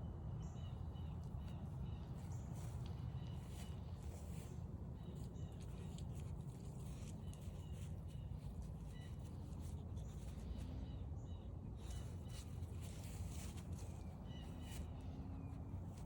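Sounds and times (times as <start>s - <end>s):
footsteps on forest trail: 1.8s - 8.0s.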